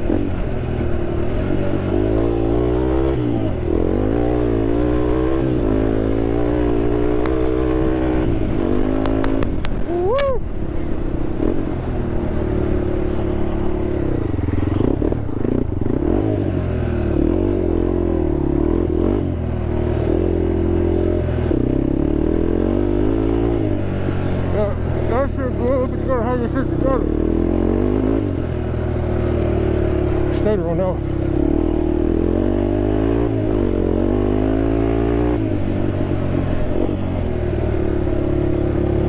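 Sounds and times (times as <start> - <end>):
quad bike engine revving: 0.0 - 10.4, 11.4 - 39.0.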